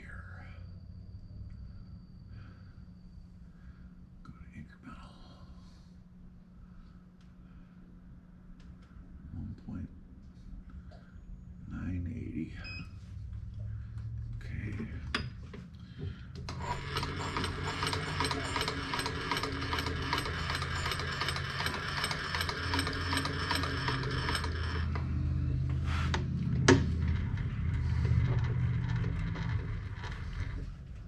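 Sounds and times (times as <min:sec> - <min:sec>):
low steady hum: 0:00.0 - 0:17.5, 0:18.2 - 0:31.0
milling machine table clicking and whirring: 0:14.6 - 0:31.0.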